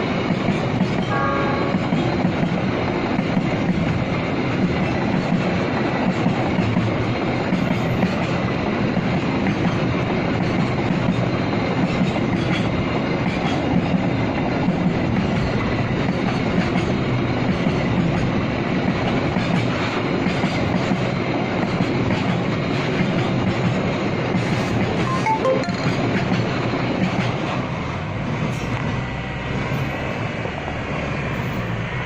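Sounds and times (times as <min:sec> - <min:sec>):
steel wheels clattering on rails: 0:00.3 - 0:25.1.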